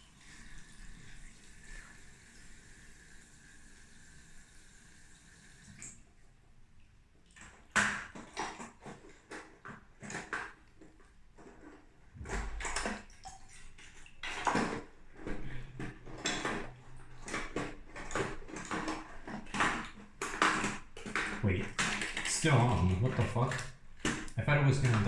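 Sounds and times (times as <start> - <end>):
plastic keyboard clattering: 14.3 - 25.0.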